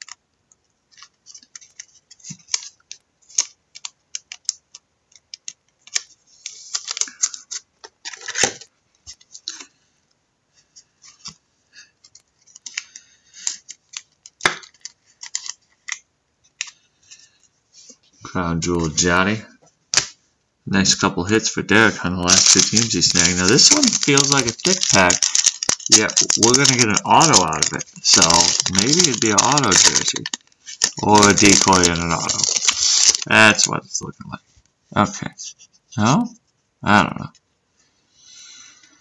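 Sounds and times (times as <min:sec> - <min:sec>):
cards rustling and scraping: 0:00.9 - 0:09.9, 0:10.6 - 0:18.0, 0:21.8 - 0:33.3.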